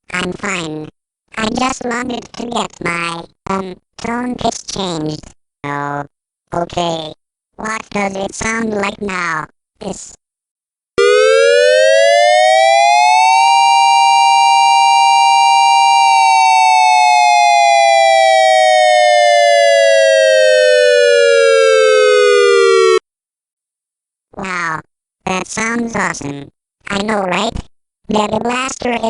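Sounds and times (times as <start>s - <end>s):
tornado siren wailing: 11.0s - 23.0s.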